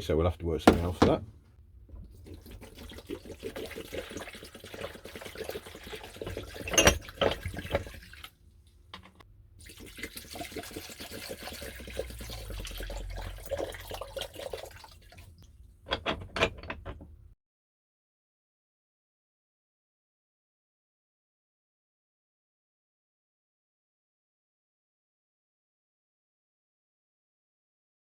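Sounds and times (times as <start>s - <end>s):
liquid pouring and splashing: 2.0s - 8.5s, 9.6s - 15.5s.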